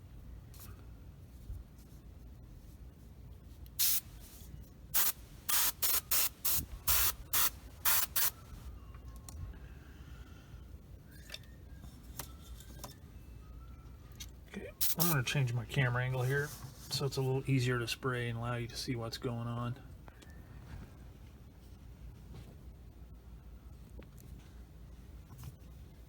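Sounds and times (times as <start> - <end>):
airbrush hissing in bursts: 3.8 - 4.2, 5.0 - 8.4, 14.8 - 15.2.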